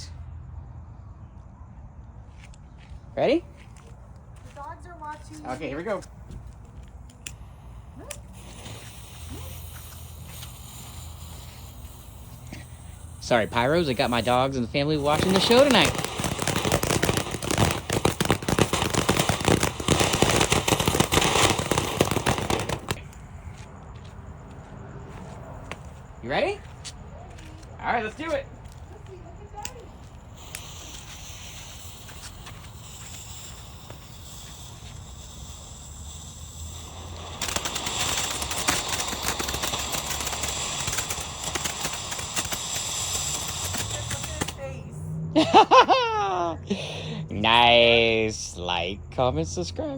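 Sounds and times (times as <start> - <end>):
firework fountain crackling: 3.2 - 49.0.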